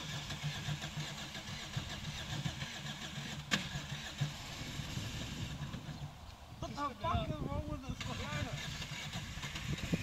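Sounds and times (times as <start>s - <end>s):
car engine running: 0.0s - 6.9s.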